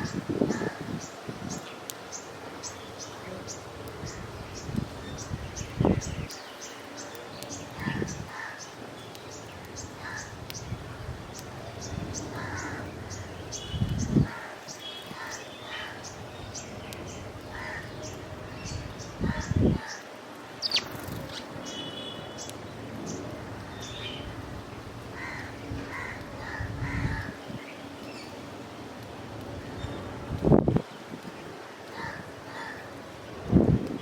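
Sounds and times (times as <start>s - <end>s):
small birds chirping: 0.0s - 32.9s
crows cawing: 0.5s - 0.9s, 7.8s - 8.7s, 10.0s - 10.4s, 12.3s - 13.2s, 14.2s - 16.1s, 17.5s - 18.0s, 19.2s - 20.0s, 25.1s - 27.4s, 31.9s - 32.9s.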